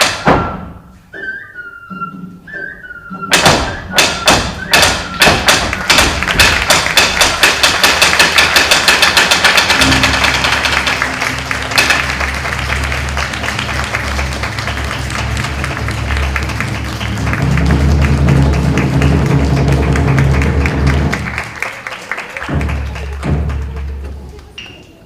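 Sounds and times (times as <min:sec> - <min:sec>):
wooden clappers clacking: 0:03.3 - 0:16.6.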